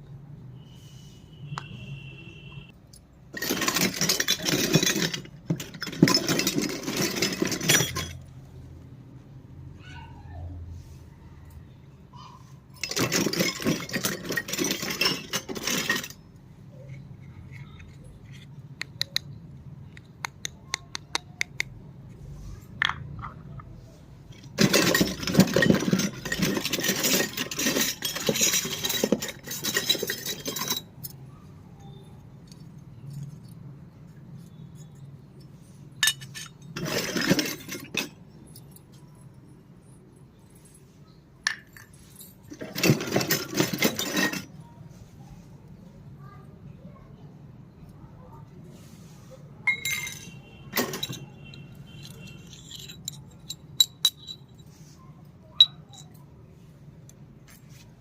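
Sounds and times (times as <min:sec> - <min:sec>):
small plastic pieces clicking: 0:17.4 - 0:21.8.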